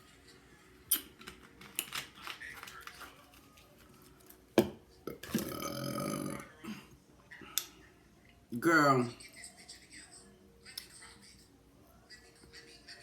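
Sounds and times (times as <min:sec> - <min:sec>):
long low burp: 0:05.1 - 0:06.5
mouth noises eating: 0:05.1 - 0:06.8.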